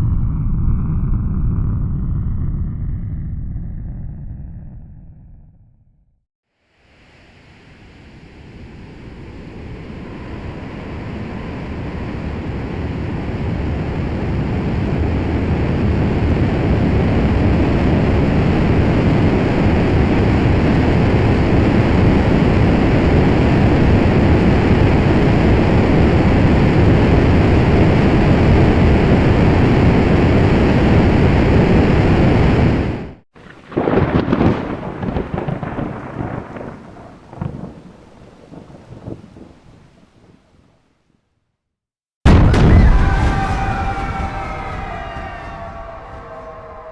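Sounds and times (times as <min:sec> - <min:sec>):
thunder rumbling: 0:07.6 - 0:40.9, 0:42.3 - 0:46.9.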